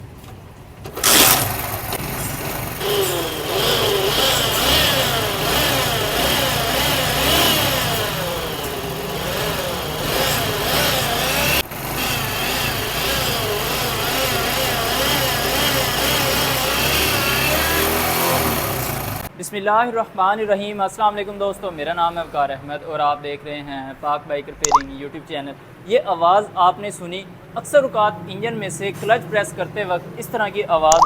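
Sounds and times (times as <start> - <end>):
clutch whirr: 0.0 - 19.3
motorcycle engine running: 1.0 - 19.3.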